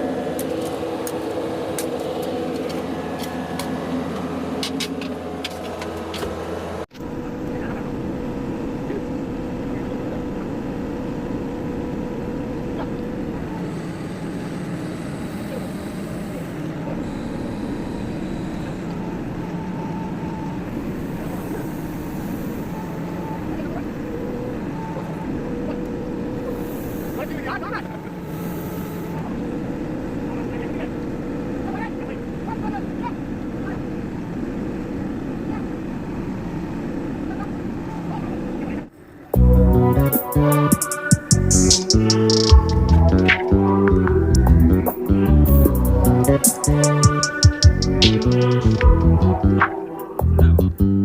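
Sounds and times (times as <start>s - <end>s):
faint whines: 0.0s - 50.3s
diesel engine running: 38.9s - 51.0s
sharp clicks and ticks: 40.8s - 45.8s.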